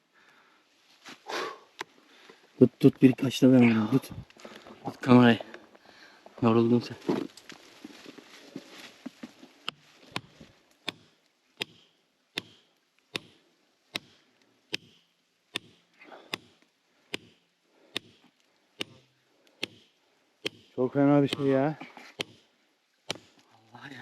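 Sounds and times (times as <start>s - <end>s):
metal tool striking stone: 9.7s - 22.5s, 23.1s - 23.4s.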